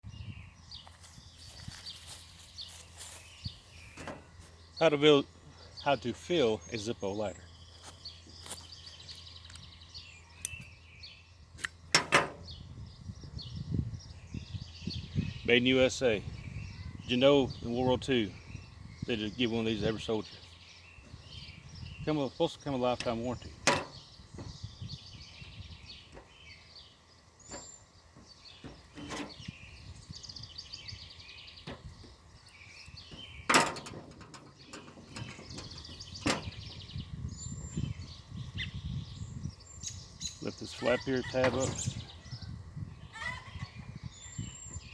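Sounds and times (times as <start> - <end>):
faint bird chirping: 0.1 - 11.6, 12.4 - 44.9
handling clicks and knocks: 23.0 - 24.5, 27.4 - 29.6, 33.0 - 36.7.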